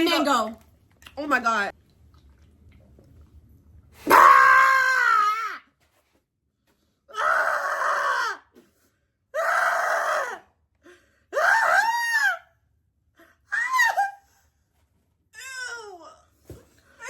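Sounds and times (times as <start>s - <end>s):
person screaming and wailing: 4.1s - 5.7s, 7.1s - 8.5s, 9.4s - 10.4s.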